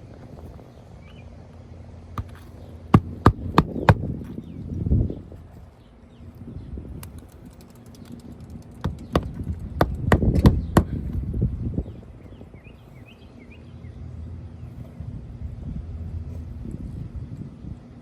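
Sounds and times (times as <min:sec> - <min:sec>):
hammer driving nails: 0:02.2 - 0:04.0, 0:08.9 - 0:11.0.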